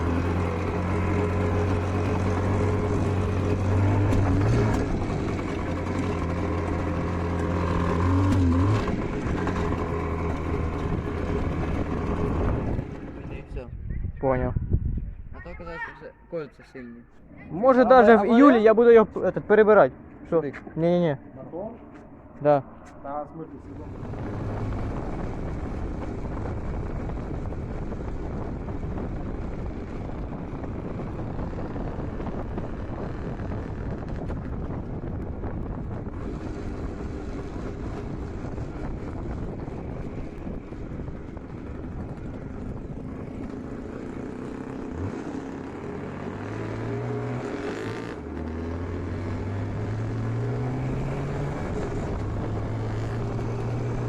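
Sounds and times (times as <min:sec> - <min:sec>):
motorcycle engine accelerating: 0:00.0 - 0:13.9, 0:22.1 - 0:54.0
wind rush: 0:00.0 - 0:15.9, 0:17.4 - 0:54.0.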